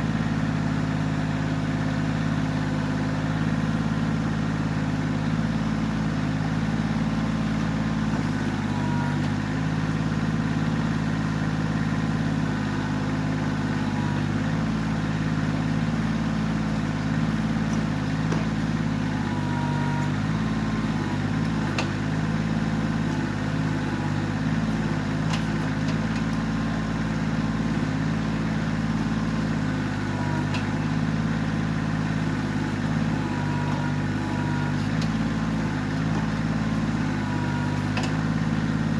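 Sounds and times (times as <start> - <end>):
tractor diesel engine running: 0.0 - 38.9.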